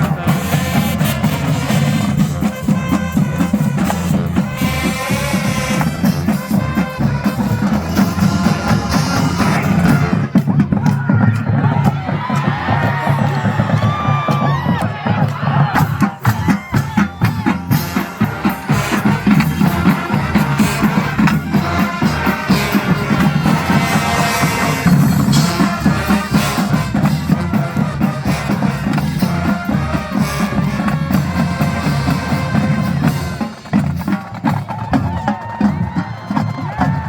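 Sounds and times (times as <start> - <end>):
drumline beat: 0.0 - 37.0
marching band horns: 0.0 - 37.0.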